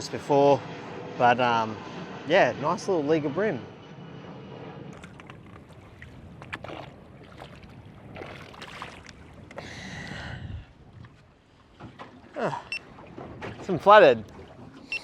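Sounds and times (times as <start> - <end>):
wind: 0.0 - 15.0
water slapping against boat hull: 5.0 - 9.6, 10.9 - 15.0.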